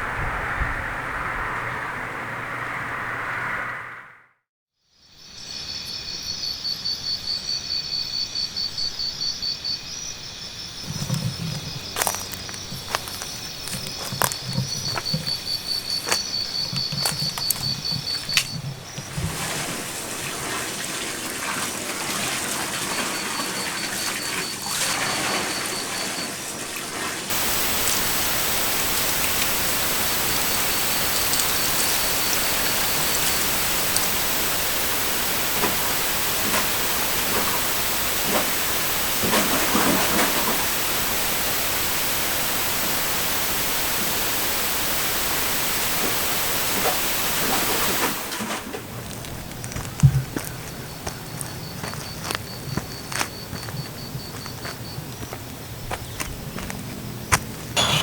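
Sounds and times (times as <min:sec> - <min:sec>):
even rushing noise: 0:00.0 - 0:04.4
rain-like hiss: 0:05.3 - 0:54.8
faint ticks: 0:10.9 - 0:19.1.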